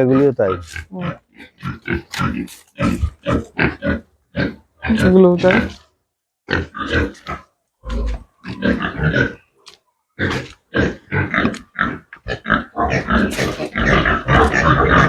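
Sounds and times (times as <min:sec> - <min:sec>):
pigs grunting: 0:00.0 - 0:05.9, 0:06.5 - 0:15.0.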